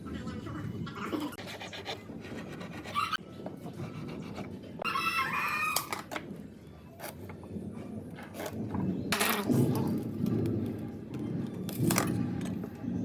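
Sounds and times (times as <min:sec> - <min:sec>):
rooster crowing: 0:04.8 - 0:05.9.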